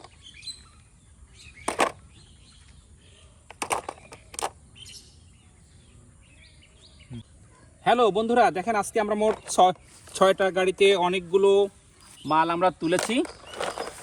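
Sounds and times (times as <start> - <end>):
faint birds chirping: 0.0 - 14.0
plastic toys knocking: 1.7 - 2.0, 3.5 - 4.6, 9.2 - 10.2, 12.9 - 14.0.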